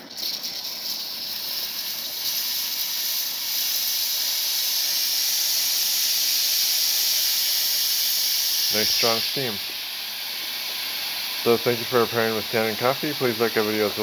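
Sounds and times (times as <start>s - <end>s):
steam wand hissing: 0.0s - 14.0s.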